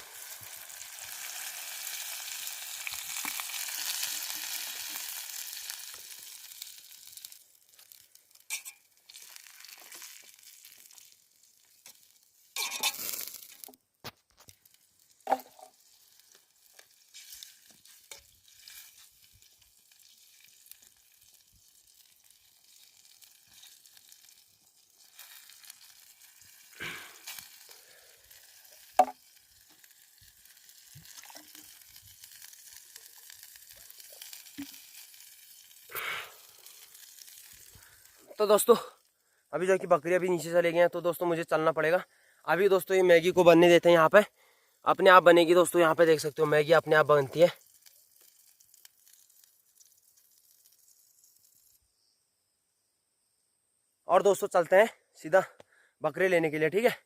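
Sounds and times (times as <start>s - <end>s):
loud sizzling in hot pan: 0.0s - 13.8s, 14.4s - 39.2s, 44.9s - 51.9s.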